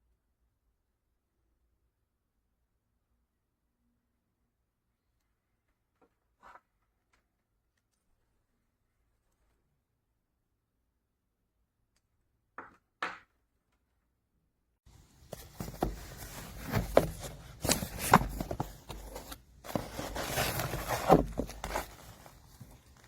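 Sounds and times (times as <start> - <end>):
rustling and crinkling handling: 14.9 - 23.0.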